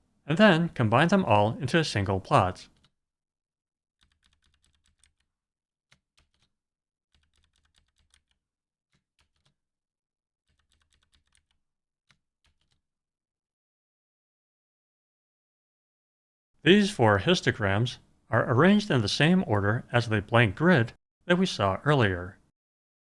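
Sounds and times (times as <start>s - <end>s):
keyboard typing: 4.0s - 5.3s, 7.1s - 8.4s, 10.5s - 12.8s.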